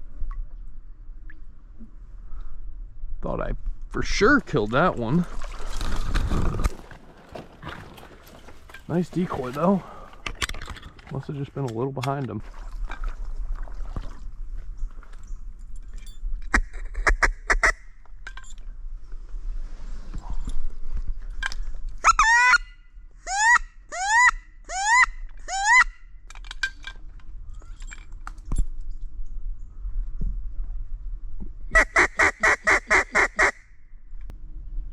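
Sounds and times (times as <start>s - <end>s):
duck squeals rising in pitch: 22.0s - 22.7s, 23.3s - 26.0s.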